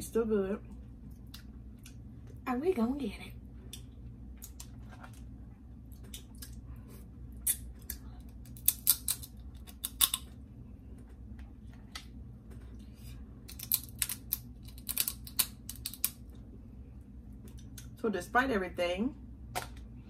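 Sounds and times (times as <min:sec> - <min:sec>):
faint low hum: 0:00.0 - 0:20.0
crab shell cracking and crunching: 0:07.4 - 0:10.4, 0:13.4 - 0:16.3.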